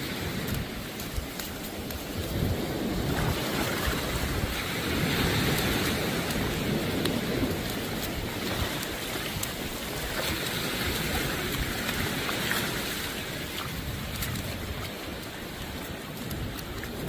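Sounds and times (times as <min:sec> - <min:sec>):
surf washing on beach: 0:00.0 - 0:17.0
wind on microphone: 0:00.0 - 0:17.0
faint ticks: 0:00.2 - 0:02.6.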